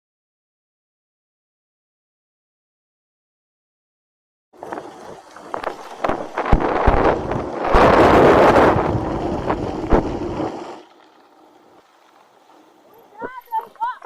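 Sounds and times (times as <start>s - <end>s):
wind buffeting microphone: 4.6s - 10.8s.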